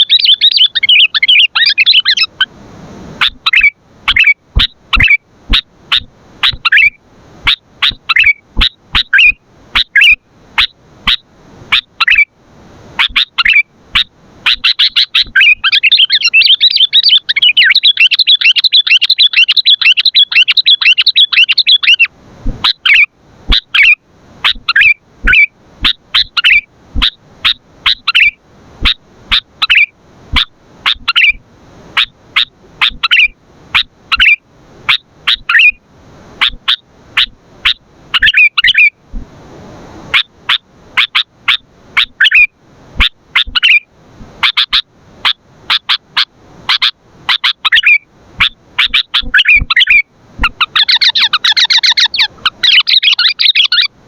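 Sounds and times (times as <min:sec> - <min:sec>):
bird chirping: 0:00.0 - 0:02.5, 0:03.2 - 0:12.3, 0:13.0 - 0:31.4, 0:32.0 - 0:35.8, 0:36.4 - 0:38.9, 0:40.1 - 0:43.8, 0:46.7 - 0:53.9.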